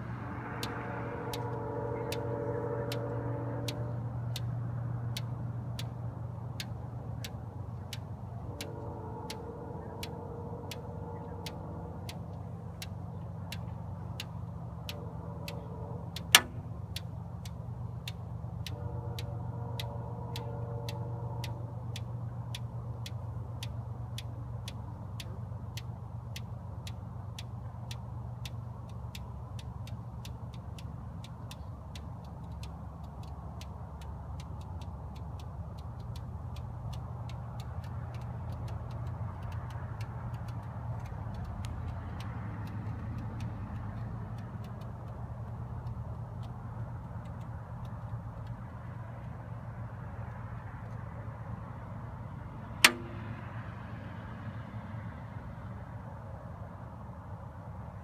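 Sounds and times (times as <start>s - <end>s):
faint pinging tones: 0.0s - 6.0s
even ticking: 0.0s - 51.2s, 52.7s - 53.7s
low hum: 0.0s - 58.0s.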